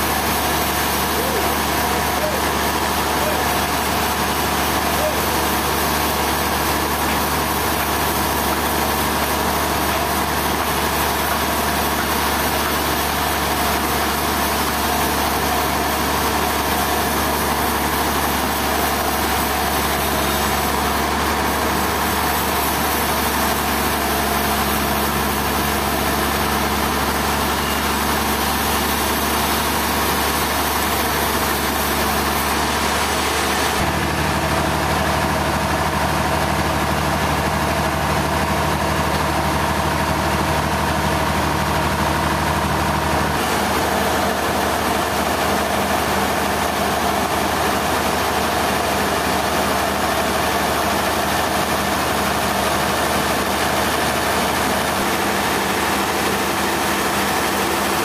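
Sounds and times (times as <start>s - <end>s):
engine running steadily: 0.0s - 58.0s.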